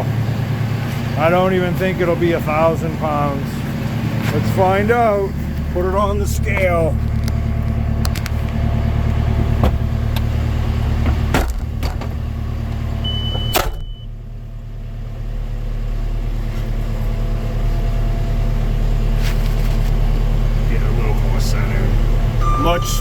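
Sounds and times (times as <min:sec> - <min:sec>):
engine running steadily: 0:00.0 - 0:23.0
loud clunk: 0:09.5 - 0:12.3, 0:13.3 - 0:14.0.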